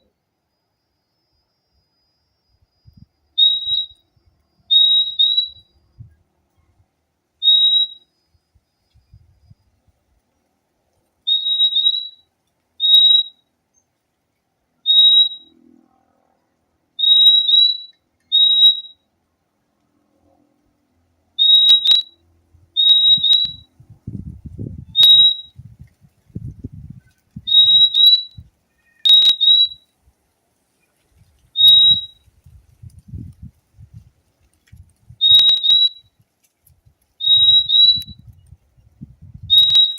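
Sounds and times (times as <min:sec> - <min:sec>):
bird high whistled calls: 0:01.4 - 0:06.1, 0:07.4 - 0:09.7, 0:11.3 - 0:13.4, 0:14.8 - 0:15.6, 0:17.0 - 0:19.0, 0:21.4 - 0:23.7, 0:24.8 - 0:25.6, 0:26.9 - 0:29.9, 0:31.5 - 0:32.4, 0:35.1 - 0:36.2, 0:37.2 - 0:38.4, 0:39.4 - 0:39.9
sharp clicks: 0:21.6 - 0:22.1, 0:23.2 - 0:23.6.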